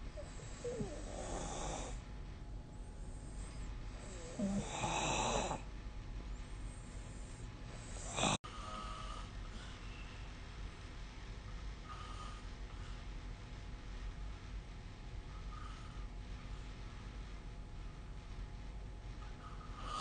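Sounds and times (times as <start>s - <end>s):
person snoring: 0.2s - 2.0s, 4.0s - 5.6s, 7.9s - 8.8s.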